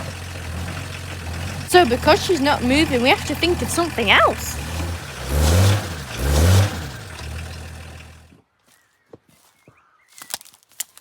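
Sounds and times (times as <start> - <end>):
truck engine revving: 0.0 - 8.3.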